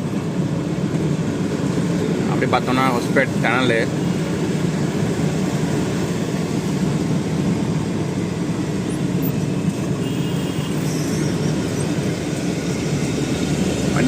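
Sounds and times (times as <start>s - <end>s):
diesel engine drone: 0.0s - 14.0s.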